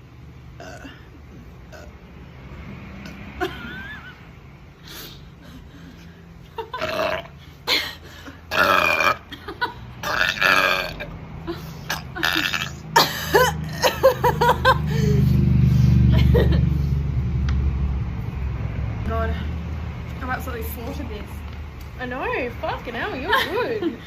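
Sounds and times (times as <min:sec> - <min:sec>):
woman burping loudly: 0:00.6 - 0:01.9, 0:06.7 - 0:07.9, 0:08.5 - 0:11.1, 0:11.8 - 0:14.2.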